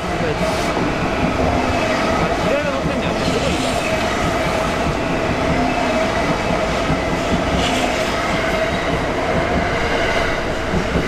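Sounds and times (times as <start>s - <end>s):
train wheels rumbling on rails: 0.0s - 11.0s.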